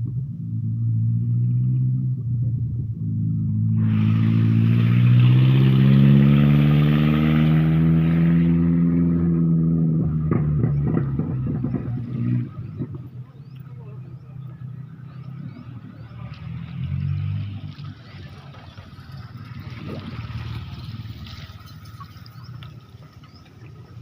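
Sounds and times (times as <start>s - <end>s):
speedboat engine speeding up: 3.0s - 24.0s
rushing hiss: 3.8s - 6.3s.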